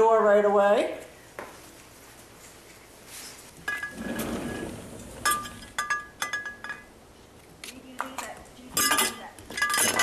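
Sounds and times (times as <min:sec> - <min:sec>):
metal bowl clinking: 0:03.6 - 0:07.0, 0:08.2 - 0:10.0.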